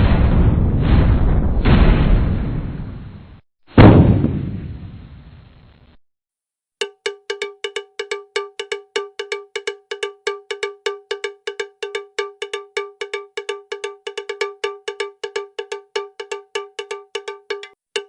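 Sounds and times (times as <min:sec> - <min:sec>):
rapid ringing metallic strikes: 0:06.8 - 0:18.0.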